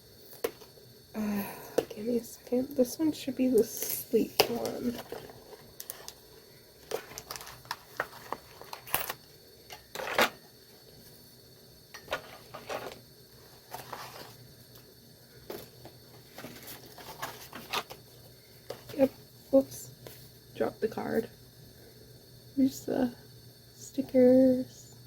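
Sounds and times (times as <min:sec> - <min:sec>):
plastic and cardboard packaging rustling: 0:04.3 - 0:06.2, 0:06.8 - 0:09.2, 0:12.1 - 0:14.4, 0:15.4 - 0:19.1.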